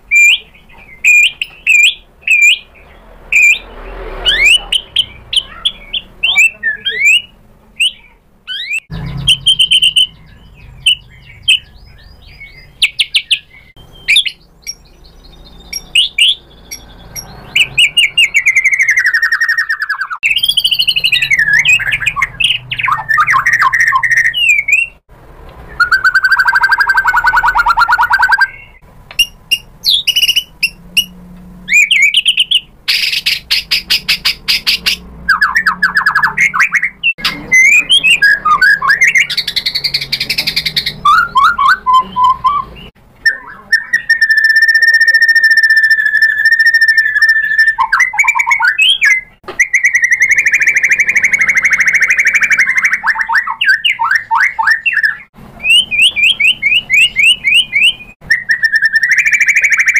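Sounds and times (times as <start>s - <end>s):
songbird whistles and trills: 0.0s - 25.0s, 25.6s - 59.9s
buzzy bird note: 1.0s - 25.0s.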